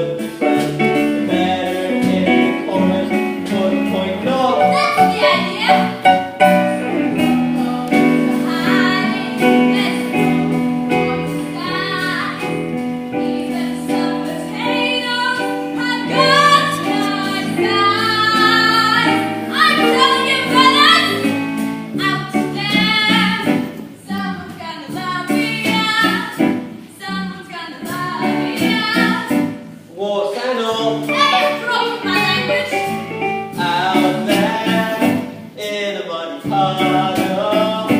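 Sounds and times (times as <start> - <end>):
instrumental accompaniment: 0.0 - 30.0, 30.6 - 35.8
woman singing: 7.2 - 21.3, 22.0 - 29.5, 30.8 - 32.9.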